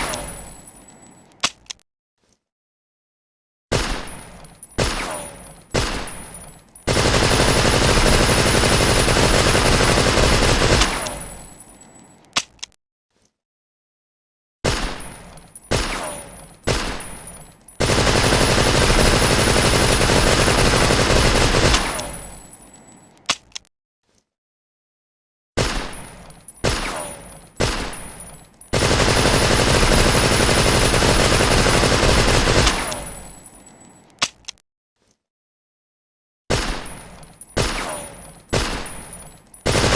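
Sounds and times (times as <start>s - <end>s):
automatic gunfire burst: 6.9s - 11.1s, 17.8s - 22.0s, 28.7s - 33.2s, 39.7s - 39.9s
small gun click: 34.1s - 35.2s.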